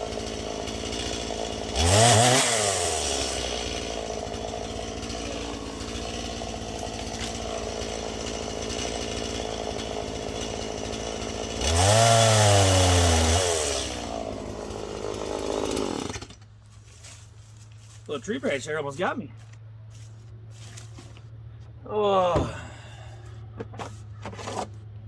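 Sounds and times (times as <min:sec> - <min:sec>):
chainsaw running and revving: 0:00.0 - 0:16.4.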